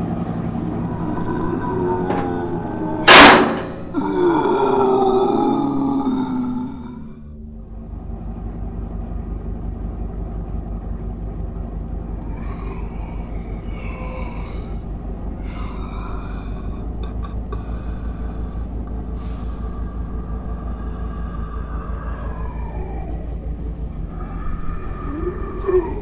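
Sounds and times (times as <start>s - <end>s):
higher wavering tones: 0.0s - 6.1s
steady low rumble: 0.0s - 26.0s.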